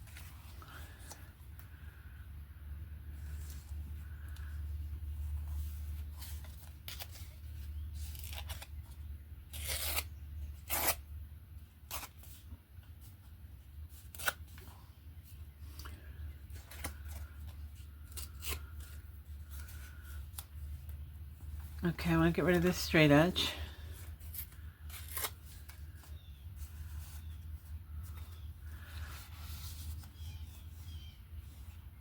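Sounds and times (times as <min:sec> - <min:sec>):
paper rustling and snipping: 0:05.2 - 0:11.0.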